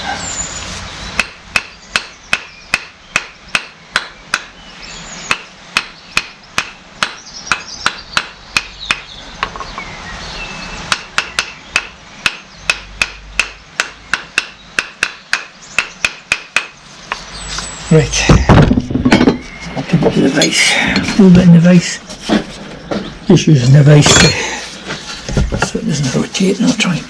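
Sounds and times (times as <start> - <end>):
hammer tapping on metal: 10.9 - 16.7.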